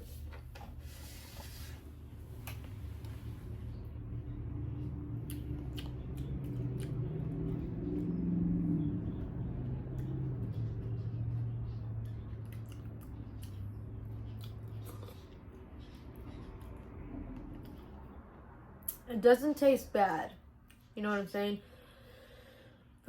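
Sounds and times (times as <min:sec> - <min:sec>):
low hum: 0:00.0 - 0:19.0
wet chewing: 0:05.0 - 0:08.6, 0:09.6 - 0:18.0.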